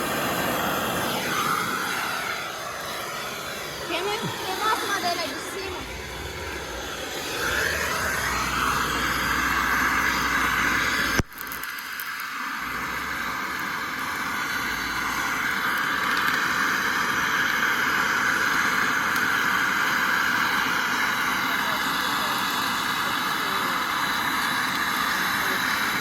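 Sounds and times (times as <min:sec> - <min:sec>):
soldering torch hissing: 0:00.0 - 0:26.0.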